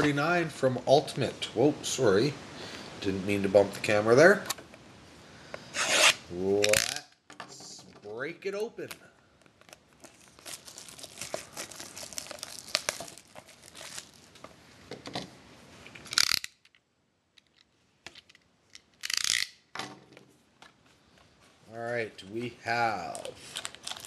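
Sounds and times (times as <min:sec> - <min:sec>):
plastic wrapping crinkling and tearing: 0:08.8 - 0:14.4, 0:23.0 - 0:24.0
plastic rustling: 0:08.8 - 0:14.6, 0:23.0 - 0:24.0.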